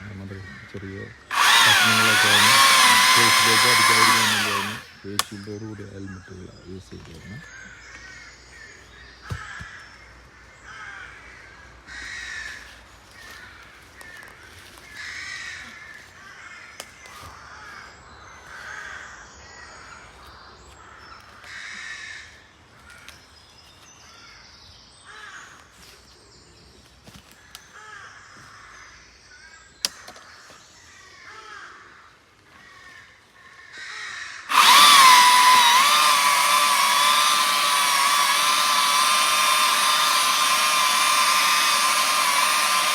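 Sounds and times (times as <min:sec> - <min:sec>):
birds calling: 0:00.0 - 0:42.9
electric chainsaw whining: 0:01.3 - 0:05.3, 0:34.5 - 0:42.9.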